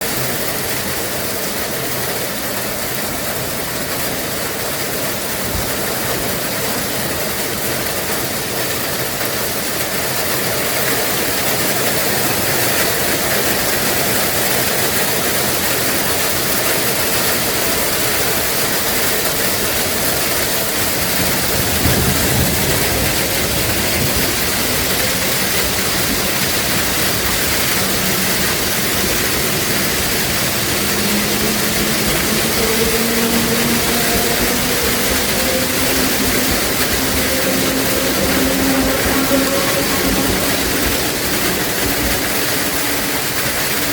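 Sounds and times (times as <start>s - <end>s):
diesel locomotive engine running: 0.0s - 43.9s.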